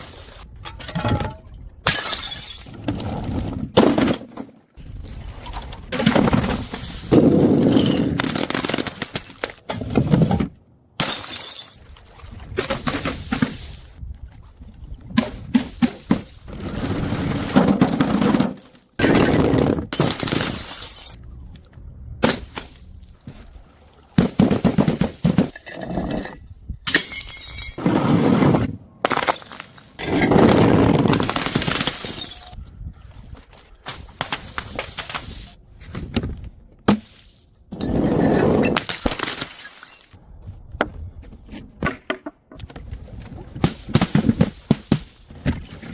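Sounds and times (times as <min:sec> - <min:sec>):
glass bottles smashing: 0:01.9 - 0:02.7, 0:11.0 - 0:11.8, 0:20.0 - 0:21.2, 0:26.9 - 0:27.8, 0:31.1 - 0:32.6, 0:38.8 - 0:40.2
glass pieces clinking: 0:26.9 - 0:27.8, 0:31.7 - 0:32.6.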